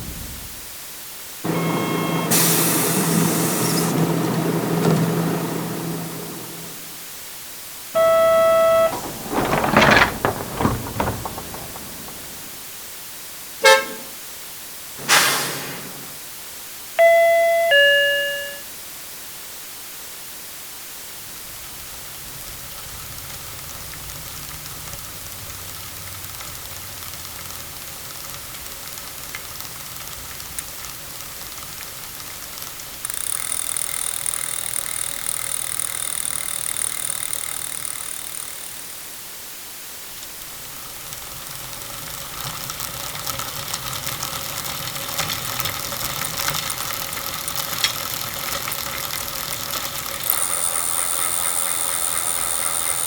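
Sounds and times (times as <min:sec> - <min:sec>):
bus stop-request chime: 0:08.0 - 0:09.0, 0:17.0 - 0:18.8
rattle of clicks: 0:08.0 - 0:12.8, 0:21.8 - 0:39.0, 0:40.2 - 0:53.0
low vehicle rumble: 0:08.9 - 0:12.7
short loud burst: 0:15.0 - 0:16.2.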